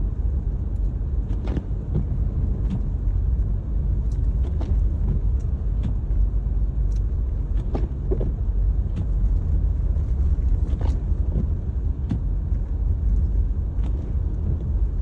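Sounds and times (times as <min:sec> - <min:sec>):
car engine and tyre rumble: 0:00.0 - 0:15.0.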